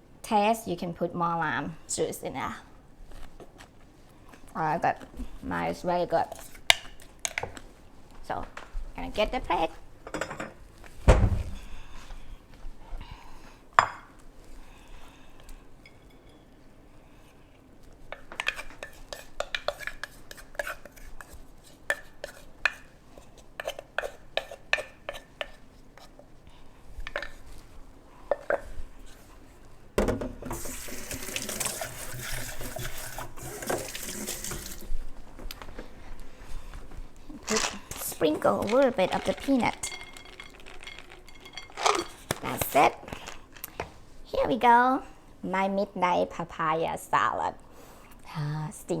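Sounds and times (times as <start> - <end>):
spoon and dishes clinking: 38.6 - 42.3.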